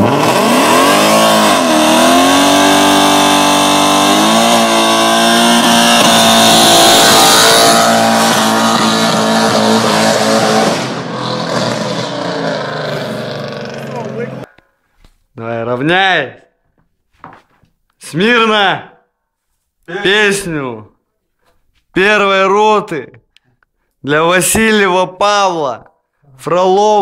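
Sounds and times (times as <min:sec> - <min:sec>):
car engine revving hard: 0:00.0 - 0:14.5.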